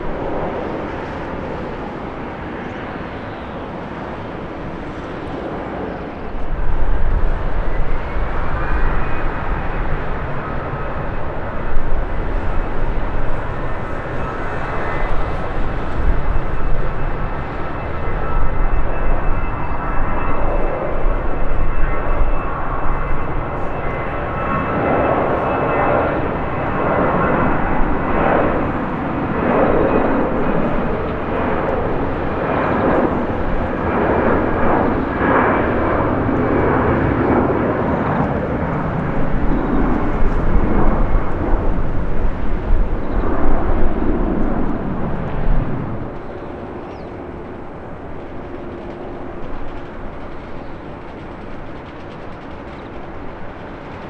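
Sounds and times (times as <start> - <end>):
high engine whine: 0.0 - 54.0
jet engines roaring: 0.0 - 54.0.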